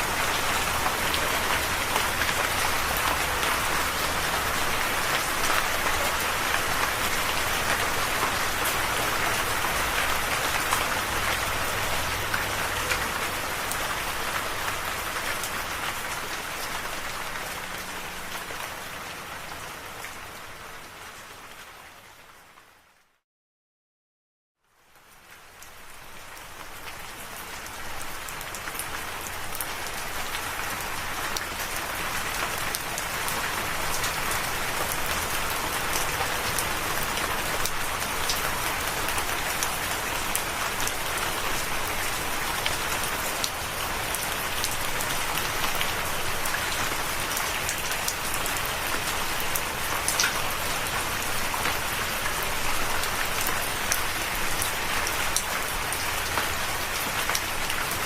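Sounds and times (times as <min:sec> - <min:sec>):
steady rain: 0:00.0 - 0:23.2, 0:24.6 - 0:58.0
raindrops ticking on surface: 0:24.6 - 0:58.0.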